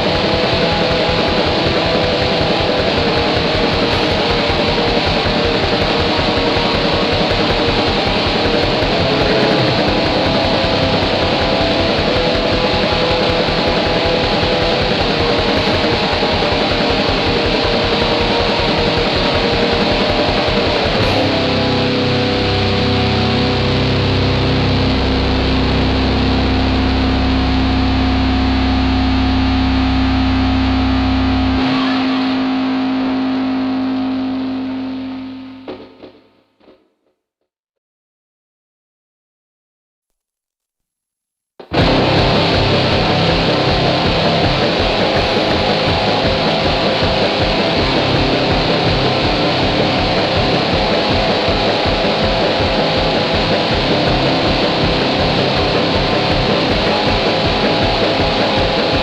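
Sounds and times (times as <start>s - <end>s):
fast drumming: 0.0s - 21.6s, 41.6s - 59.0s
distorted electric guitar: 0.0s - 36.8s, 41.6s - 59.0s.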